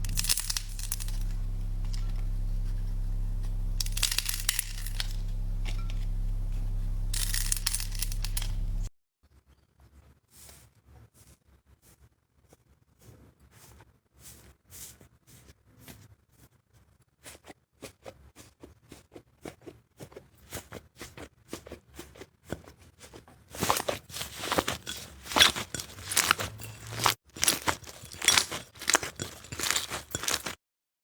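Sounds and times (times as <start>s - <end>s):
slime popping and crackling: 25.2s - 30.5s.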